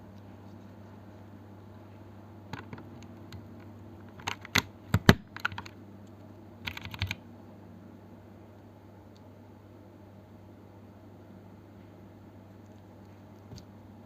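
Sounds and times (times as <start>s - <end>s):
mechanical keyboard typing: 4.1s - 5.8s, 6.6s - 7.2s.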